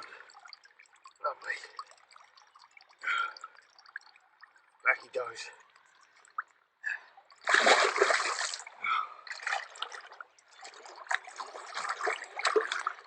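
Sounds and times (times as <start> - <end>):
fish splashing in water: 7.3 - 13.0.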